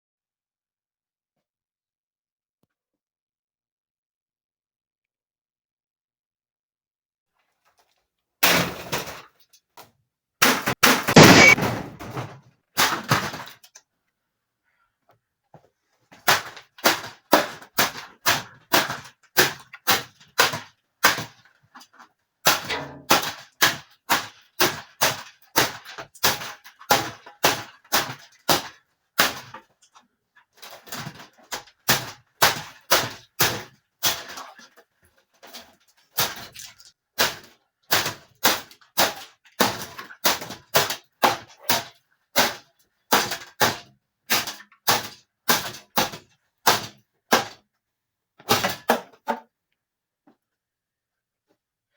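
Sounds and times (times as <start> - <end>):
metal fan being smashed: 10.8 - 13.4, 22.5 - 23.4.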